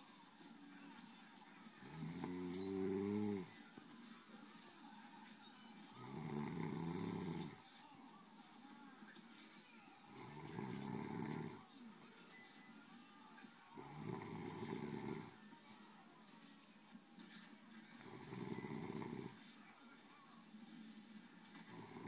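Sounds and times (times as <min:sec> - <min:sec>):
person snoring: 0:01.8 - 0:03.6, 0:06.0 - 0:07.6, 0:10.1 - 0:11.6, 0:13.8 - 0:15.4, 0:18.0 - 0:19.4, 0:21.7 - 0:22.0
quiet breathing: 0:13.6 - 0:15.8, 0:17.2 - 0:19.8.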